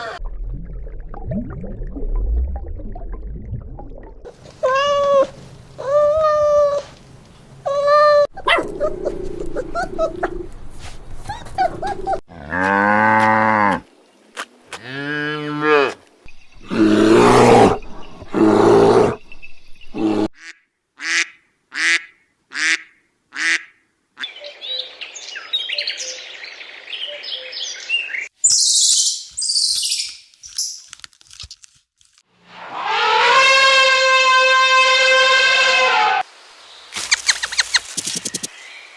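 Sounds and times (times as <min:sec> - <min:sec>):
high-pitched animal calls: 0:07.7 - 0:10.5
harsh animal calls: 0:08.3 - 0:10.6
bird chatter: 0:37.0 - 0:38.5.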